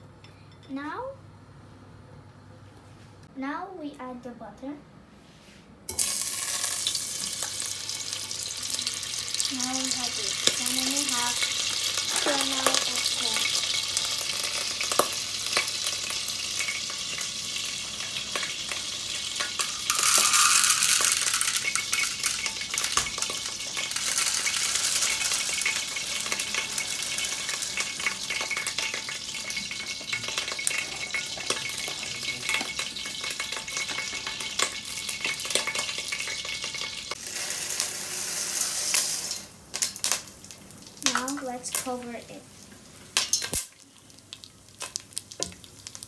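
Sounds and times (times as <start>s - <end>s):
kernels clicking and scraping on pan: 5.9s - 40.3s
oil sizzling in a pan: 5.9s - 46.0s.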